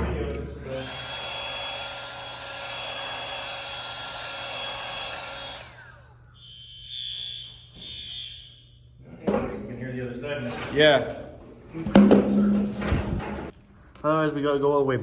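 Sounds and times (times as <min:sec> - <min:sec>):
heat gun blowing with a hiss: 0:00.6 - 0:06.3
long high tones: 0:00.6 - 0:09.0.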